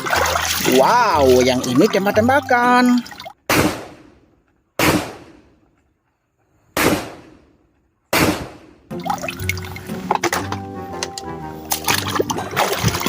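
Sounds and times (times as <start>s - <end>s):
gunshots: 3.5s - 5.6s, 6.8s - 8.9s.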